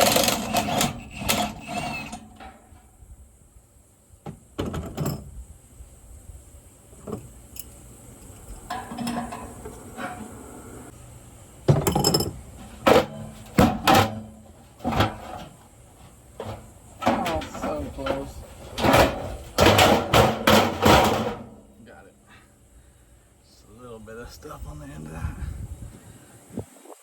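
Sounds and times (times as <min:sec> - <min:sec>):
tools and metal parts clattering: 0:00.0 - 0:02.8, 0:07.0 - 0:10.4, 0:11.7 - 0:21.6.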